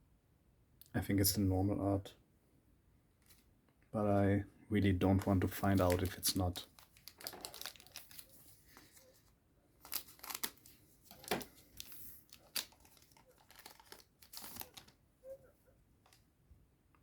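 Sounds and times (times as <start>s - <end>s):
wrapper crinkling and rustling: 5.2s - 15.0s.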